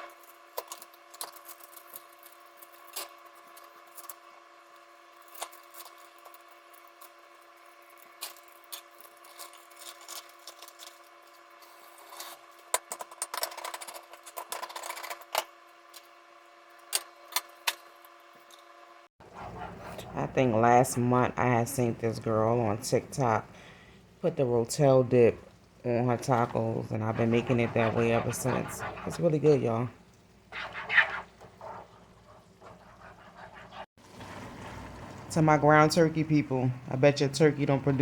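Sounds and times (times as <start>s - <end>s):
electrical hum: 15.6s - 38.0s.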